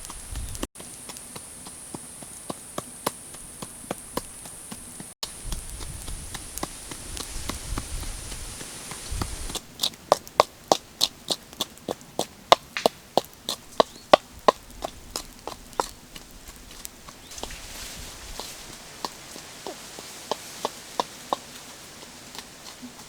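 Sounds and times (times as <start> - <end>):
high hiss: 0.0 - 9.6, 17.3 - 23.0
chopping on a wooden block: 12.6 - 13.0.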